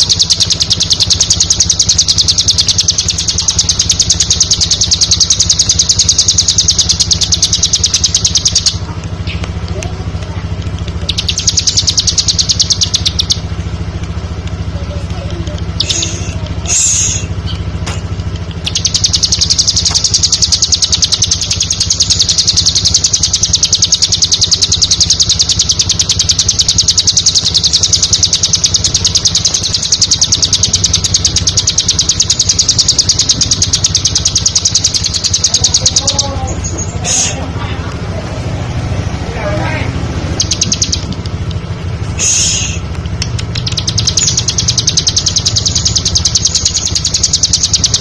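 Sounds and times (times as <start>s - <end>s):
bird fast high trill: 0.0s - 8.9s, 11.0s - 13.5s, 15.8s - 17.6s, 18.6s - 37.4s, 40.0s - 41.2s, 42.2s - 42.9s, 43.5s - 48.0s
steady low hum: 0.0s - 48.0s
short bird calls: 42.2s - 42.9s.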